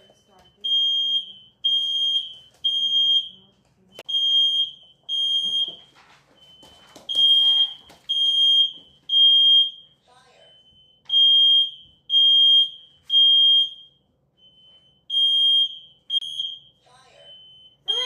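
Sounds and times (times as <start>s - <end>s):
fire alarm beeping: 0.0s - 18.0s.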